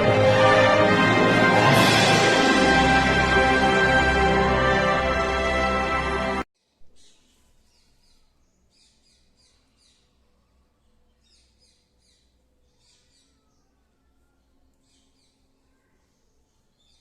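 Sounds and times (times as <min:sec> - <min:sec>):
background music: 0:00.0 - 0:06.4.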